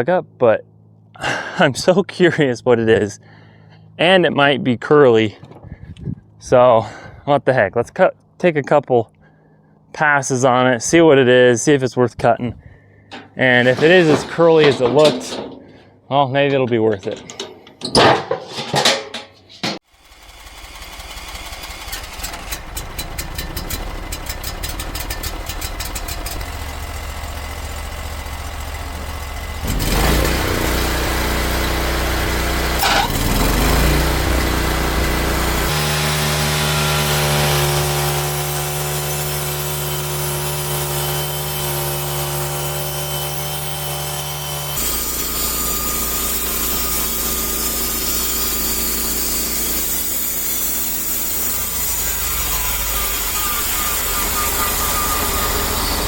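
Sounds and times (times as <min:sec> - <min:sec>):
sawmill engine running: 0:13.1 - 0:19.3, 0:19.9 - 0:56.0.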